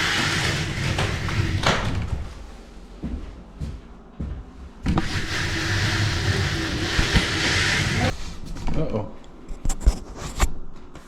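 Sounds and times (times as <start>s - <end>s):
trowel scraping ceiling: 0.0s - 1.7s, 5.0s - 8.3s.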